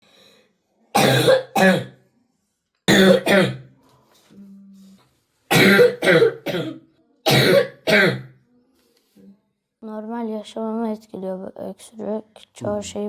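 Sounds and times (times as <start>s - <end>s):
boy coughing harshly: 1.0s - 2.0s, 2.9s - 3.7s, 5.5s - 8.4s.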